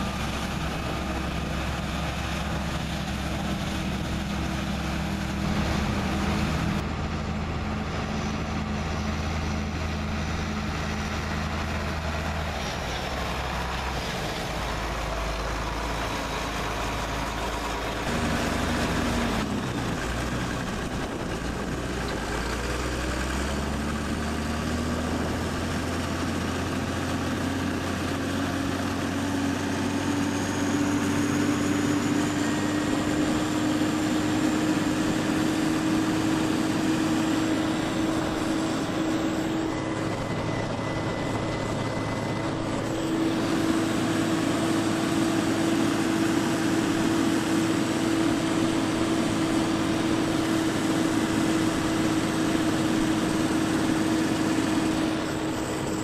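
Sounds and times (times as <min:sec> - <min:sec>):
heavy engine running: 0:00.0 - 0:56.0.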